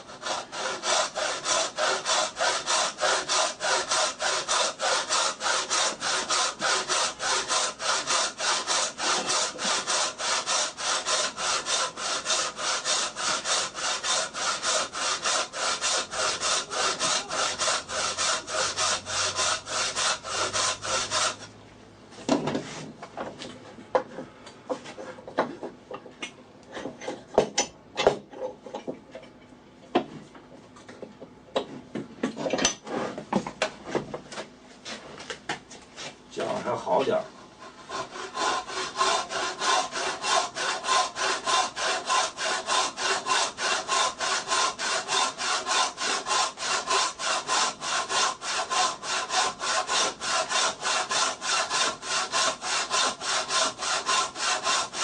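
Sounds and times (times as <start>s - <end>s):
hand saw cutting wood: 0.0s - 21.5s, 36.0s - 55.0s
wood and tools knocking: 22.2s - 34.4s.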